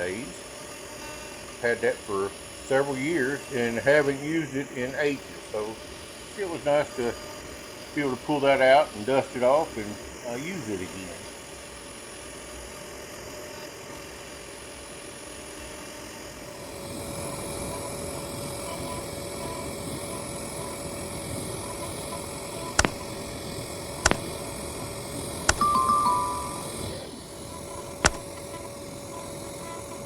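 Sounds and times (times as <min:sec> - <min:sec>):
sharp clicks: 0:22.8 - 0:23.1, 0:24.0 - 0:24.4, 0:25.5 - 0:26.7, 0:28.0 - 0:28.4.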